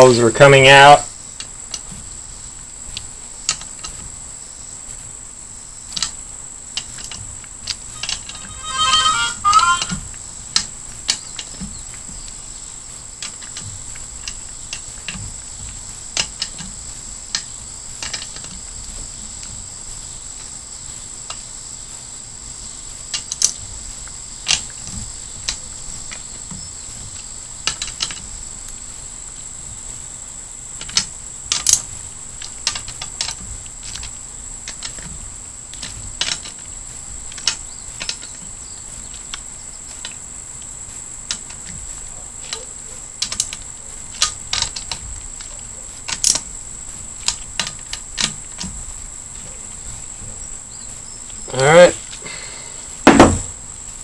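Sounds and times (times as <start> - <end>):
steady high-pitched tone: 7.9 - 10.1.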